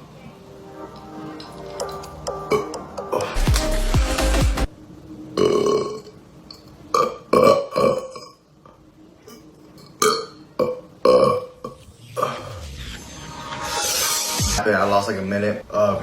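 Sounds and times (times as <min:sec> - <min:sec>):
man burping loudly: 0:05.4 - 0:06.2, 0:06.9 - 0:08.4, 0:10.0 - 0:12.5.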